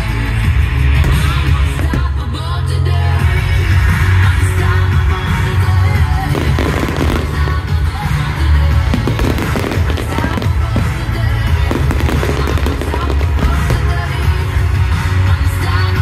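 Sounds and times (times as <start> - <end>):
loud music playing: 0.0 - 16.0
fireworks bursting and crackling: 0.1 - 2.5, 5.0 - 16.0.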